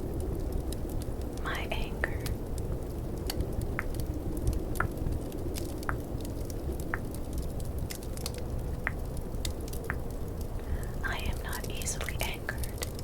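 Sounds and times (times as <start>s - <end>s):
fireplace crackles: 0.0s - 13.0s
snowstorm low rumble: 0.0s - 13.0s.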